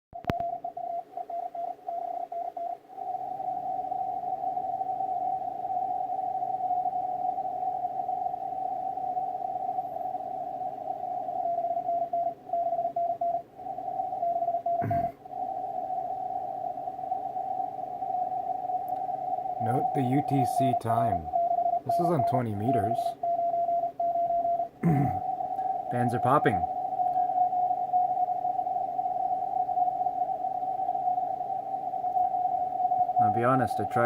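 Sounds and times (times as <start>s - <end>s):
radio band hiss: 19.1s - 23.4s, 24.8s - 27.1s, 33.0s - 34.0s
morse code beeping: 19.6s - 25.3s.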